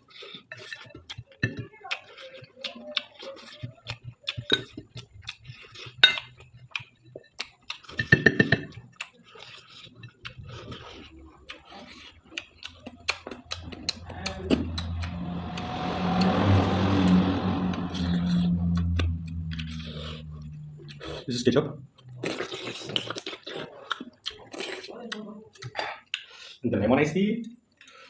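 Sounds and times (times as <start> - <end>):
cutlery clinking on a plate: 7.2 - 8.8
low hum with hiss: 13.5 - 22.5.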